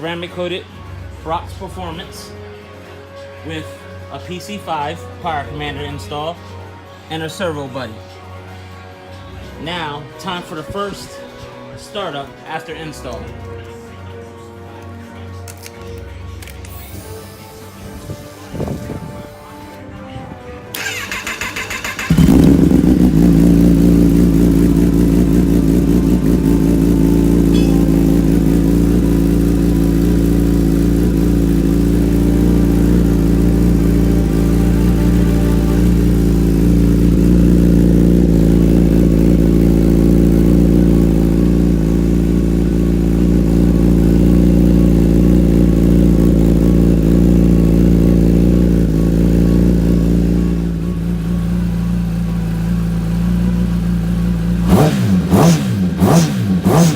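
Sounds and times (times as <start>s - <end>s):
motorcycle engine cranking on starter: 20.7s - 24.9s
motorcycle engine idling: 20.8s - 56.9s.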